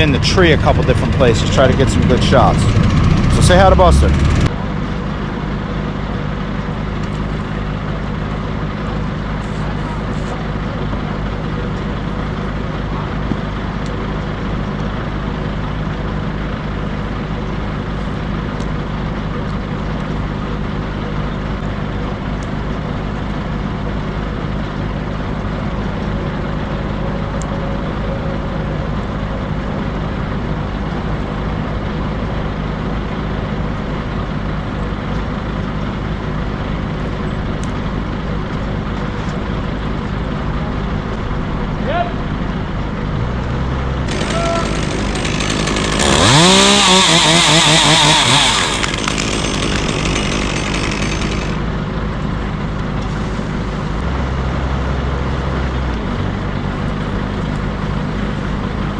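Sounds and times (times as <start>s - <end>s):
motor engine running: 0.0s - 58.9s.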